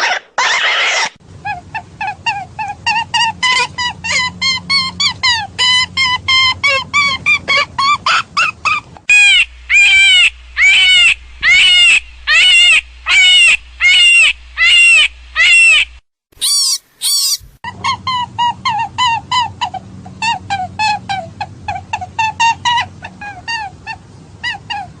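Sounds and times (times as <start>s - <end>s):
hare distress squeals: 9.1s - 17.4s.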